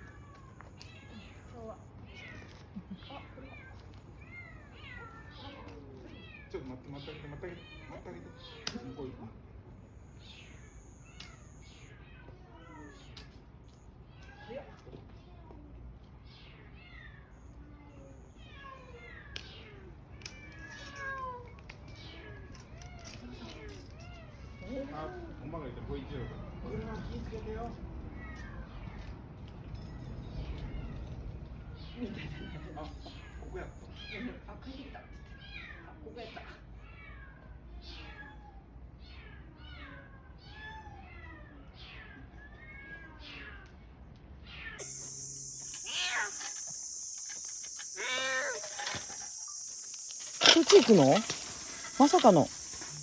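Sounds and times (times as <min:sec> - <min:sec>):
cats meowing: 0:00.0 - 0:09.3, 0:16.3 - 0:27.0, 0:35.2 - 0:43.8, 0:44.4 - 0:53.0
sharp clicks: 0:44.8 - 0:53.0.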